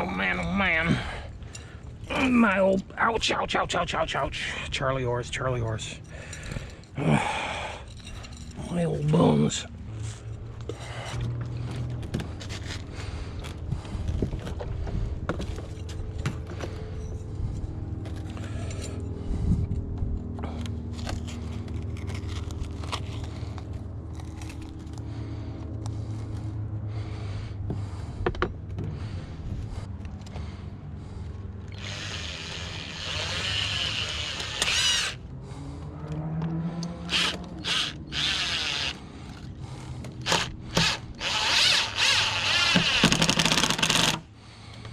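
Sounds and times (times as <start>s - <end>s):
steady low hum: 0.0s - 43.1s
power drill running: 31.7s - 35.2s, 37.1s - 39.0s, 40.2s - 44.2s.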